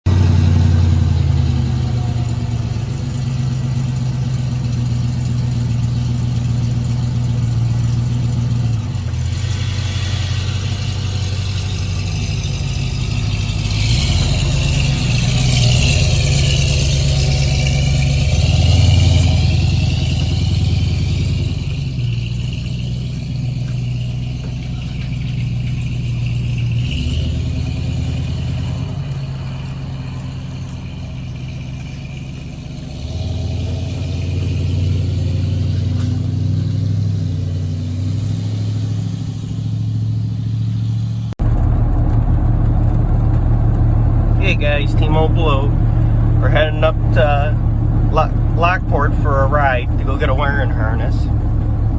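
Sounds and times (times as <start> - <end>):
vehicle engine revving: 0.0 - 51.9.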